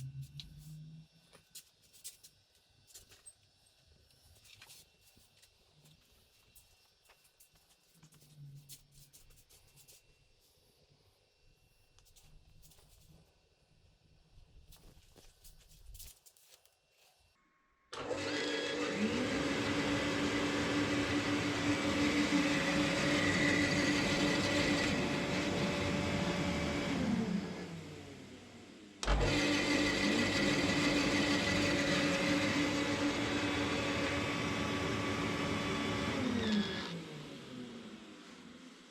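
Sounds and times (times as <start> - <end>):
shop vacuum motor whining: 17.9 - 38.9.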